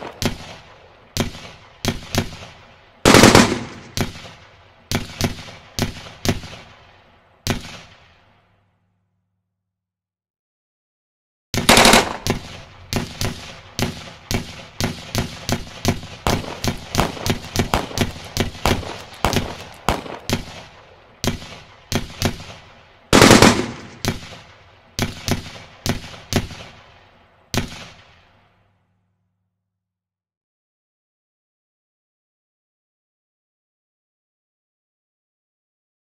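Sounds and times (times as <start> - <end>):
gunshots: 0.0 - 8.3, 11.6 - 28.4.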